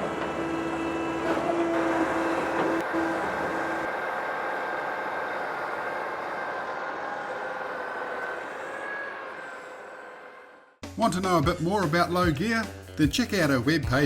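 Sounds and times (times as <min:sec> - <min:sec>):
hydraulic baler machine noise: 0:00.0 - 0:10.7
steady whine: 0:00.0 - 0:10.8.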